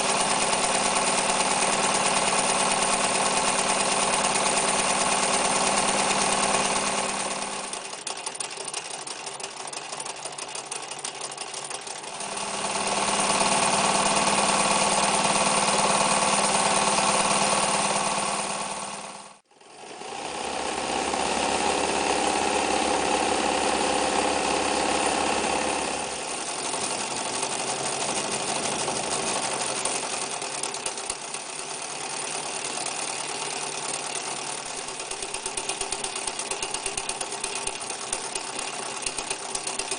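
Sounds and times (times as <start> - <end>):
electric sewing machine running: 0.0 - 39.9.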